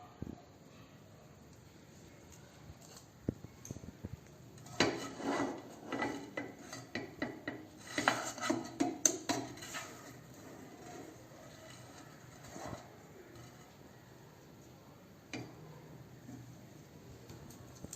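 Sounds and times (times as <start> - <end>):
metal utensils clattering on pot: 4.6 - 13.8.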